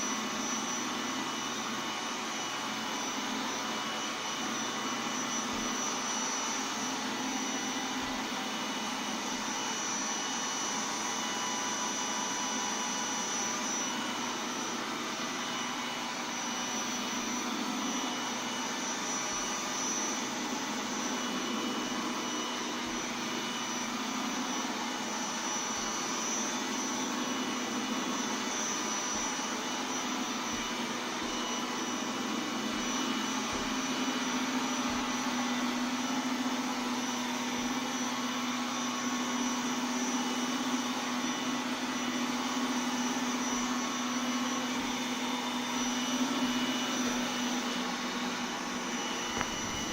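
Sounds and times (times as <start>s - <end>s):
faint high whine: 0.0s - 39.8s, 40.5s - 49.9s
robot vacuum whirring: 0.1s - 37.8s, 43.1s - 49.9s.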